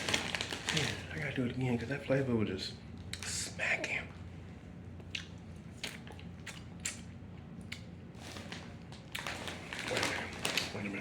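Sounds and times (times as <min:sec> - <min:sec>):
chewing crunchy chips: 0:05.0 - 0:11.0.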